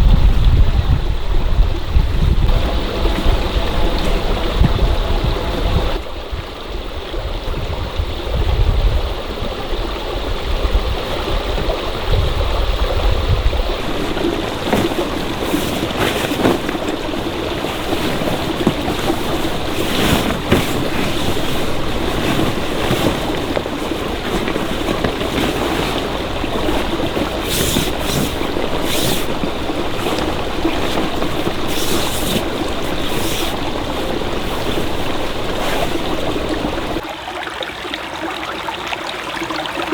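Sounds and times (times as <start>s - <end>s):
stream water rushing: 13.7s - 39.9s.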